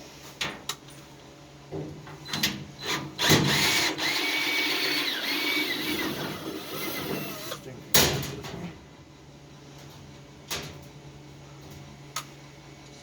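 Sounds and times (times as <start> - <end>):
power drill running: 2.8 - 7.6.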